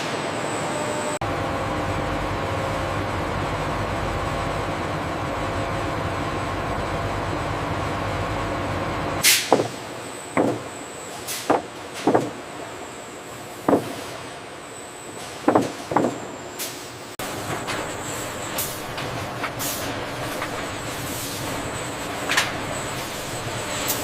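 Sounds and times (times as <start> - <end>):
factory machinery humming: 0.0 - 24.0
sharp mechanical clunks: 9.2 - 12.4, 13.7 - 14.1, 15.2 - 16.3.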